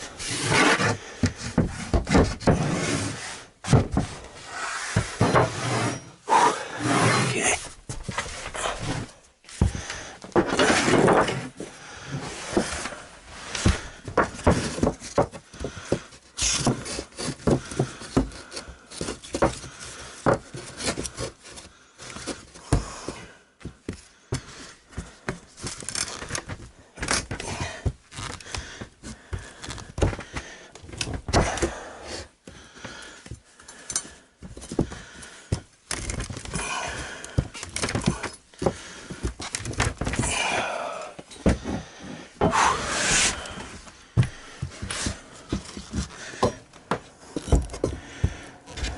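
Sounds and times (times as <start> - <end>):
wood rubbing on wood: 0.0 - 21.4, 41.5 - 48.9
knocks and thuds on floor panels: 1.2 - 2.7, 3.6 - 4.2, 13.6 - 18.5, 19.1 - 20.6, 41.4 - 42.7.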